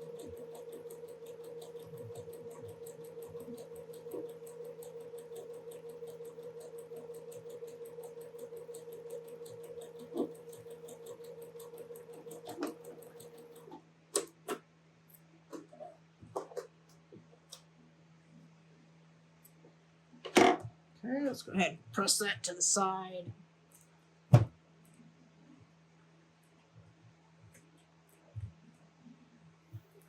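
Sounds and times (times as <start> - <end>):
sewing machine stitching: 0.0 - 14.3.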